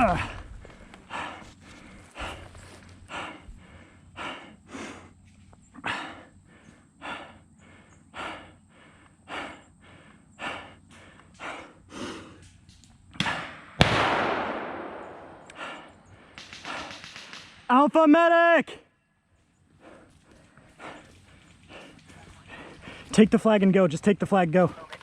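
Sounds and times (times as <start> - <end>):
person breathing heavily: 0.0 - 12.6, 14.9 - 17.2, 19.6 - 23.2.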